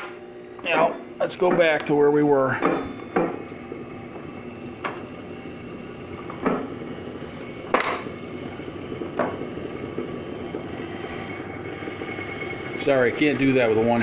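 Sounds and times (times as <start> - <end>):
milling machine running: 0.0 - 14.0.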